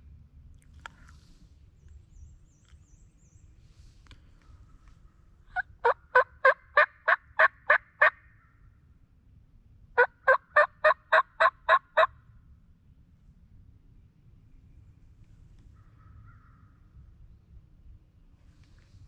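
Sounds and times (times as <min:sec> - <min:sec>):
turkey yelps: 0:04.4 - 0:08.4, 0:10.0 - 0:12.1.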